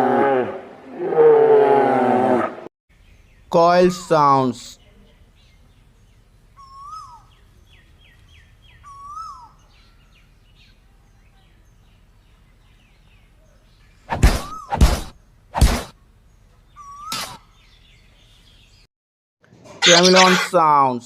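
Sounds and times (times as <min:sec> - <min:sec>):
loud harsh bird calls: 0:19.8 - 0:20.5.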